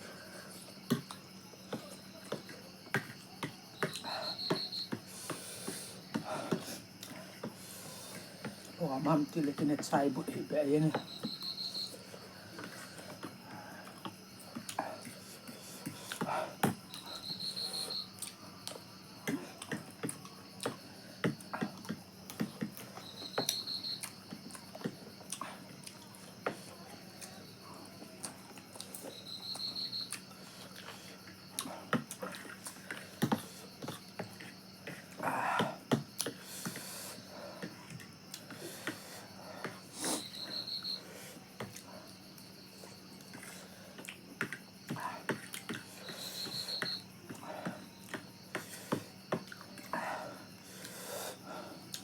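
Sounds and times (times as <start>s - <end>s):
breathing: 5.0s - 8.7s, 12.0s - 14.0s, 14.8s - 18.1s, 34.9s - 37.8s, 38.4s - 42.1s, 43.3s - 44.1s, 44.9s - 49.2s, 49.9s - 51.9s.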